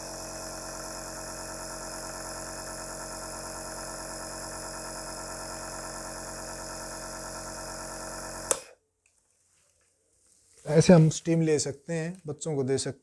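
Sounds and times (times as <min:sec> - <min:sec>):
nebulizer compressor humming: 0:00.0 - 0:08.7.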